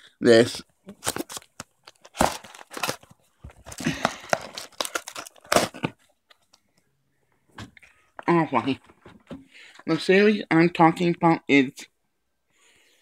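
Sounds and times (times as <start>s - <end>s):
package being torn open: 0.9s - 6.5s.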